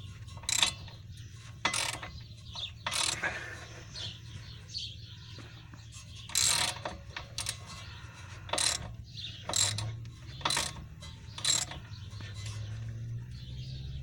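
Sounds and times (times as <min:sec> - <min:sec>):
ratchet wrench clicking: 0:00.3 - 0:03.3, 0:06.3 - 0:07.8, 0:08.4 - 0:12.6.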